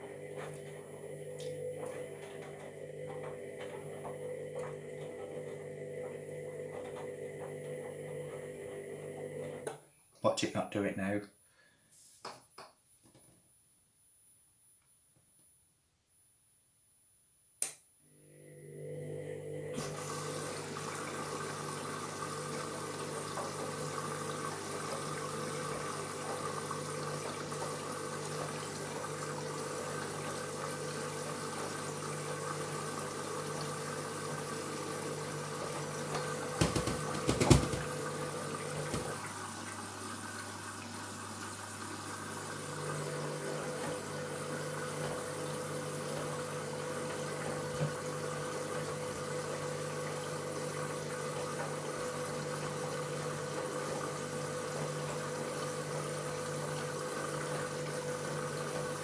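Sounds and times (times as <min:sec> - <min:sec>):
water running into washing machine: 0:00.0 - 0:09.7, 0:18.4 - 0:59.0
washing machine hum: 0:00.0 - 0:10.6, 0:18.1 - 0:59.0
loud knocks: 0:36.6 - 0:37.9.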